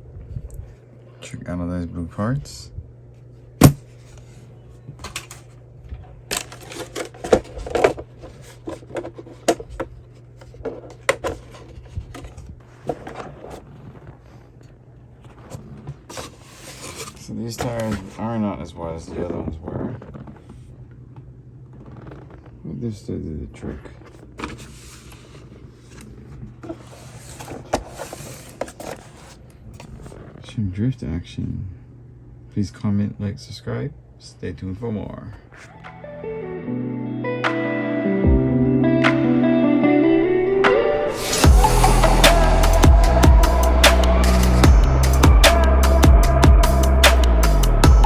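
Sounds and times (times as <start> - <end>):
sharp knock: 3.6 - 3.8
low hum: 38.2 - 48.0.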